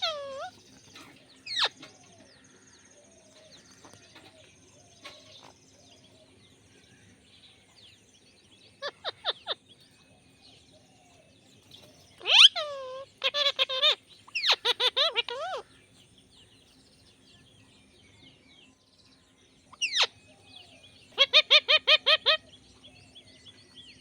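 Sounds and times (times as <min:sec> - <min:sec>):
parrot screeching: 0:00.0 - 0:00.5, 0:12.2 - 0:15.6, 0:21.2 - 0:22.4
parrot chirping softly: 0:00.0 - 0:02.3, 0:08.7 - 0:10.1, 0:11.0 - 0:18.0, 0:19.6 - 0:22.6.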